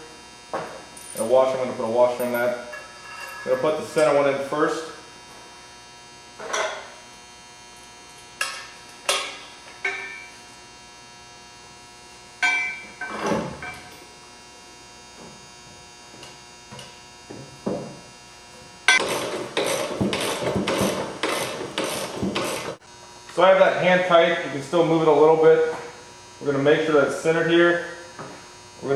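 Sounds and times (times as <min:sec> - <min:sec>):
steady background hum: 0:00.0 - 0:28.9
metal clinks and knocks: 0:02.1 - 0:03.7, 0:12.4 - 0:14.1.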